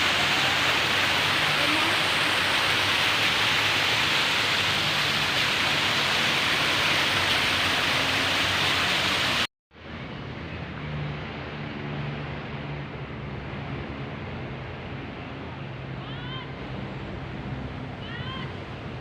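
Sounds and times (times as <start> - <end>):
fountain water splashing: 0.0 - 9.5.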